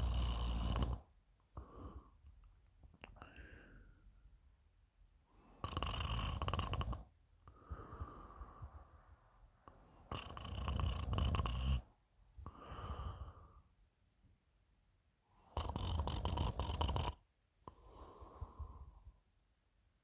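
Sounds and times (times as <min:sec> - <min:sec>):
person snoring: 0:00.0 - 0:01.0, 0:05.6 - 0:07.0, 0:10.1 - 0:11.8, 0:15.6 - 0:18.8
quiet breath: 0:00.0 - 0:04.5, 0:07.4 - 0:10.4, 0:11.0 - 0:14.0, 0:17.6 - 0:19.4.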